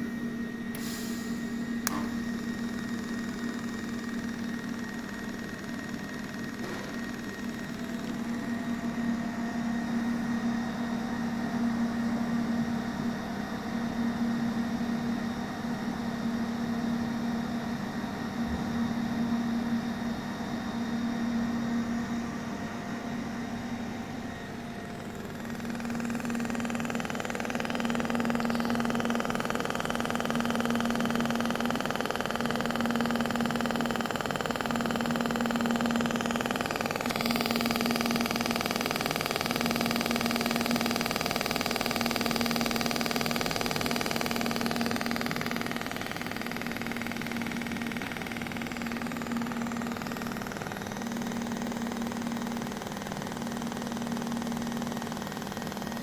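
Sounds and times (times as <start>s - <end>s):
welding machine hum: 0.0s - 12.1s, 19.5s - 56.0s
welding hiss: 0.7s - 2.7s.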